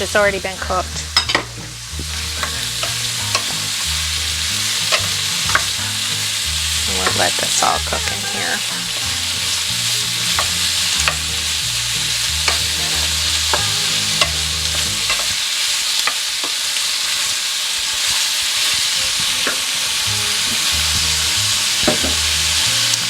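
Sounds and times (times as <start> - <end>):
vegetables sizzling in oil: 0.0 - 23.0
utensil clicking against pan: 1.2 - 15.4.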